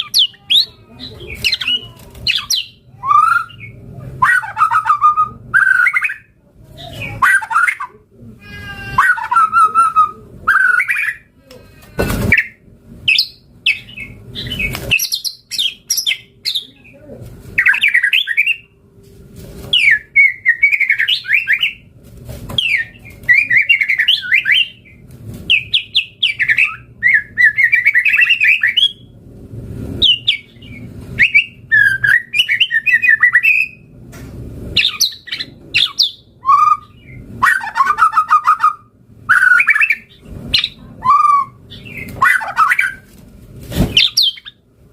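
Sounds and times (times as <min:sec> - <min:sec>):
bird singing whistled phrases: 0:01.4 - 0:06.3, 0:22.6 - 0:24.8, 0:34.8 - 0:43.0
harsh bird notes: 0:29.9 - 0:34.0, 0:34.7 - 0:43.1.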